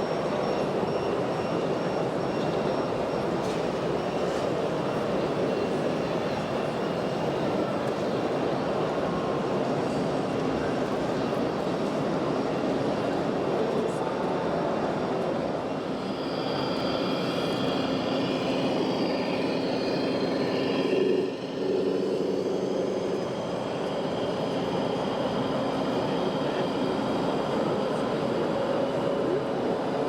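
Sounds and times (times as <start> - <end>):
whining electric motors and gears: 15.9 - 28.4.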